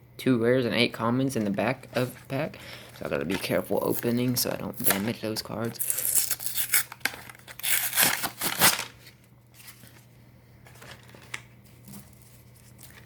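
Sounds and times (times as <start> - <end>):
foil pack tearing and crinkling: 5.7 - 9.9.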